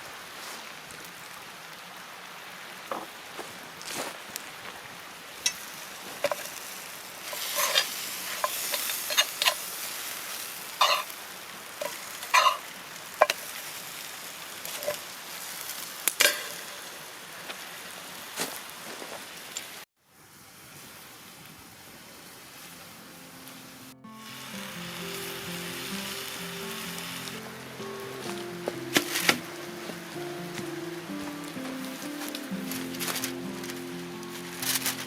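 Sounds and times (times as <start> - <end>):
steak sizzling over campfire: 0.4 - 35.0
fire popping and crackling: 5.3 - 18.8, 24.3 - 35.0.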